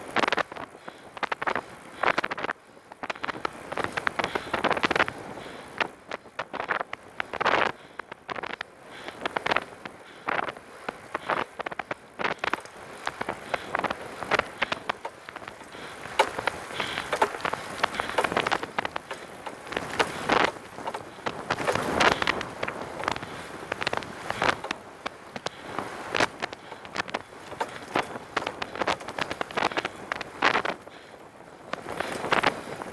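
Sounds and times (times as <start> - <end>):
wind on microphone: 0.0 - 32.9
trike rattling and knocking: 14.4 - 25.5, 26.1 - 30.6.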